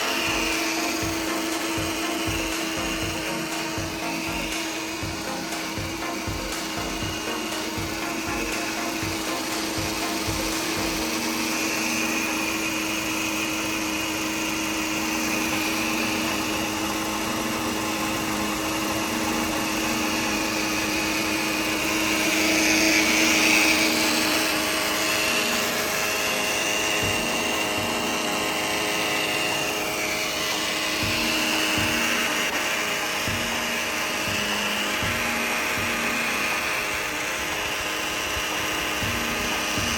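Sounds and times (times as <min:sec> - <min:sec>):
electric water pump humming: 0:00.0 - 0:39.9
high wavering whine: 0:00.0 - 0:39.9.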